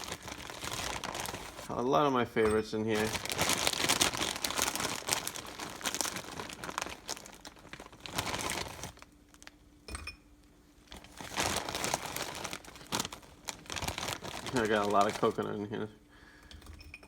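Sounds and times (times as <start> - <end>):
plastic packaging crinkling: 0.0 - 1.8, 2.8 - 9.6, 10.8 - 15.7.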